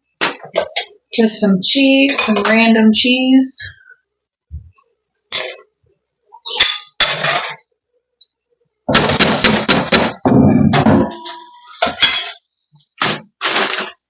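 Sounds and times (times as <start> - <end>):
sharp knocks: 8.9 - 11.2.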